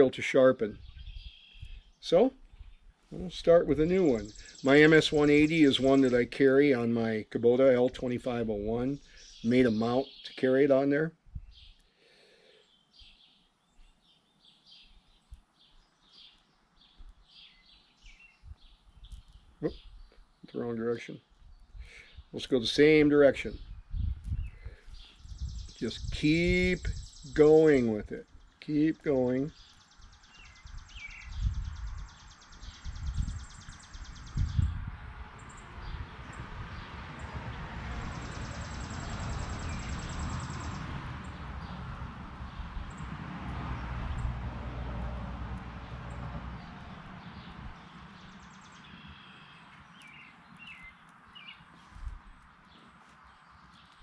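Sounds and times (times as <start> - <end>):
faint bird chirps: 0.8 - 2.0, 48.3 - 51.7.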